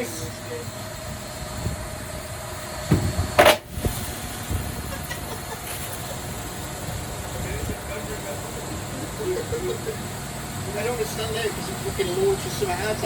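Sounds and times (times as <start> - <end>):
washing machine rumbling: 0.0 - 13.0
hard object crashing in machine: 2.9 - 3.9.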